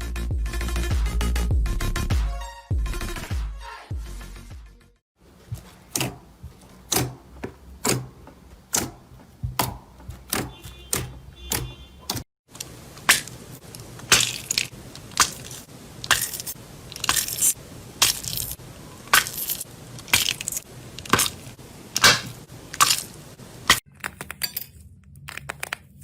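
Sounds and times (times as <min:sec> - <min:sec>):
slime clicking and crackling: 0:12.6 - 0:23.8.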